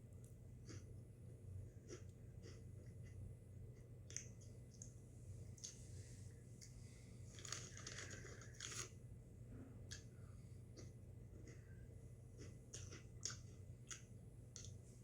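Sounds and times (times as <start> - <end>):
low steady hum: 0.0 - 15.0
crunching and chewing snacks: 7.3 - 9.0, 12.3 - 14.8.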